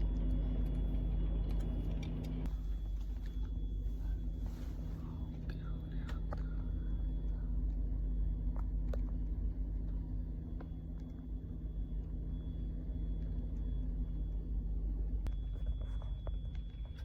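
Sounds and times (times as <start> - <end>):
train carriage rumble: 1.8 - 6.6.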